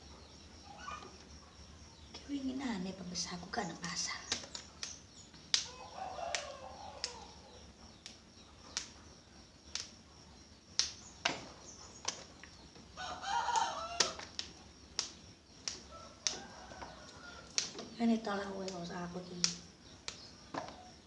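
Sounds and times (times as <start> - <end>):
beans snapping: 3.7 - 10.0, 10.7 - 21.0.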